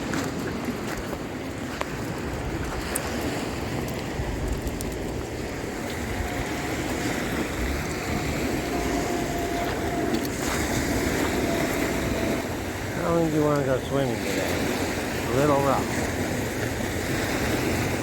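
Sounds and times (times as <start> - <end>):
waves washing onto beach: 0.0 - 18.0
wind rumbling on microphone: 0.0 - 18.0.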